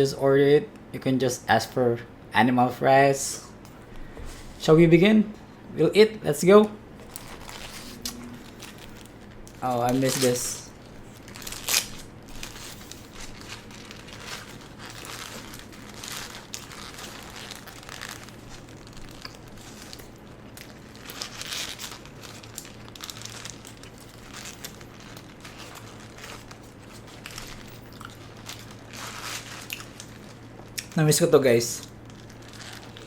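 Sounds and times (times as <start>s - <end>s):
paper wrapper crinkling: 7.0s - 33.0s
eating sounds: 27.8s - 28.9s.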